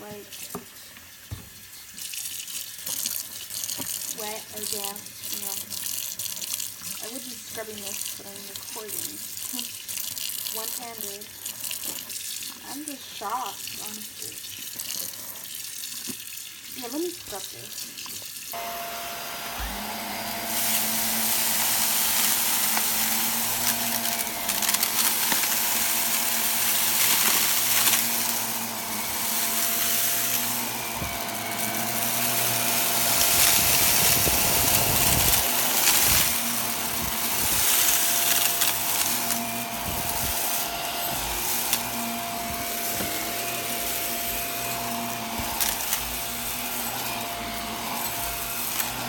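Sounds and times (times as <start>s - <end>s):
vacuum cleaner running: 18.5s - 49.0s.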